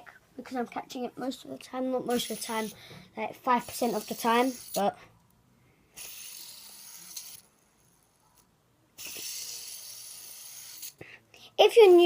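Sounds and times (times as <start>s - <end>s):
faint background hiss: 0.0s - 12.0s.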